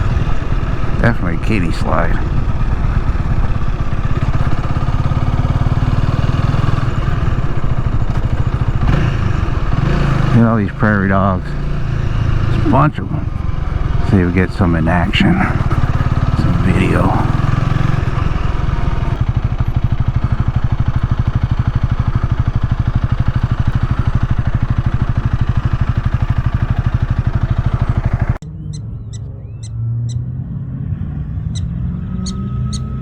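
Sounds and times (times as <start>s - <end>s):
motorcycle engine idling: 0.0s - 30.3s, 31.4s - 33.0s
prairie dogs chirping: 28.4s - 30.2s, 31.5s - 33.0s.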